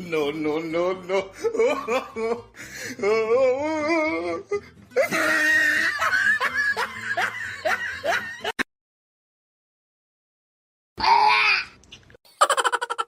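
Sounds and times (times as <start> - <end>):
person laughing in breathy gasps: 12.3 - 13.0.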